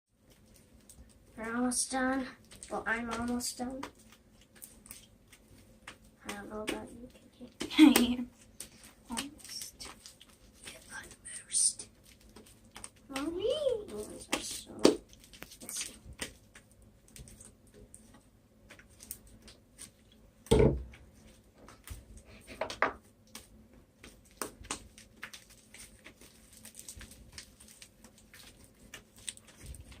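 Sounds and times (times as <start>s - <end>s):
thump: 20.5s - 20.8s.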